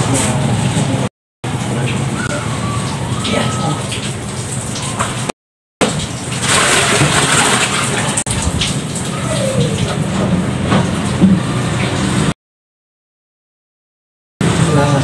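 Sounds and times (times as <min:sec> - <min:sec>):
tap water running into container: 0:01.5 - 0:12.2.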